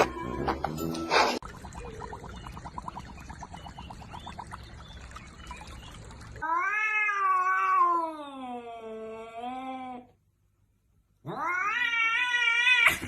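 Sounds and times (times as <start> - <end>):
cat meowing loudly: 11.2 - 13.0.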